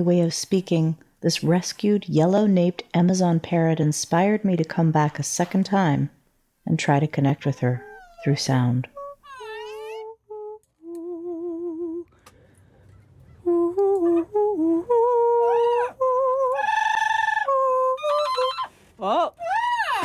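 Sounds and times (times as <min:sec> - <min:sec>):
parrot singing notes: 0:07.5 - 0:10.1.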